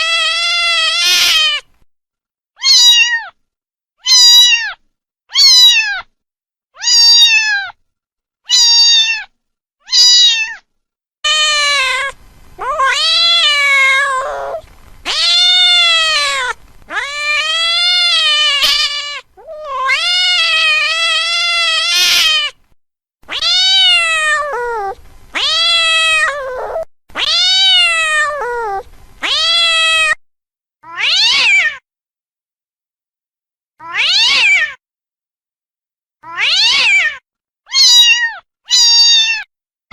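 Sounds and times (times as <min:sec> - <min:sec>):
cat meowing: 0:00.0 - 0:01.6, 0:02.6 - 0:03.4, 0:04.0 - 0:06.1, 0:06.8 - 0:07.8, 0:08.5 - 0:10.6, 0:11.2 - 0:22.6, 0:23.2 - 0:30.2, 0:30.8 - 0:31.8, 0:33.8 - 0:34.8, 0:36.2 - 0:39.5.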